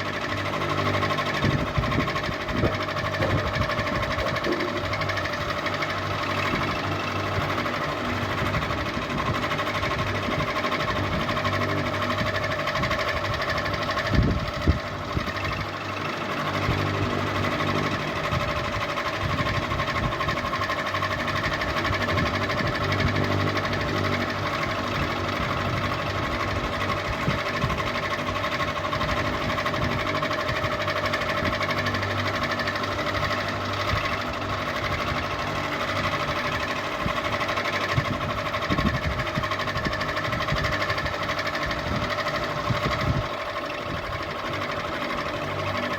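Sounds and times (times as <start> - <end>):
ceiling fan whining hum: 0.0 - 45.9.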